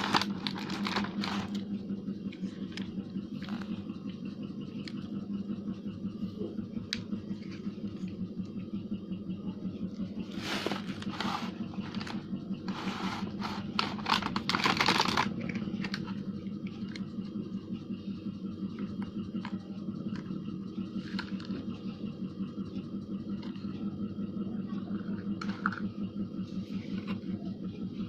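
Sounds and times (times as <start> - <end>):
packaging rustling and scratching: 0.0 - 1.7, 10.2 - 16.2
steady low buzz: 0.0 - 28.0.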